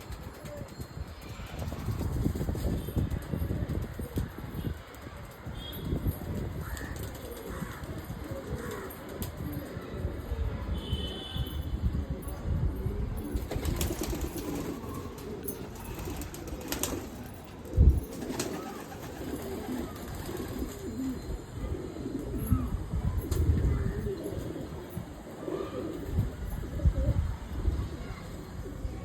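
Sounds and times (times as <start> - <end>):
pigeons cooing: 12.2 - 29.0.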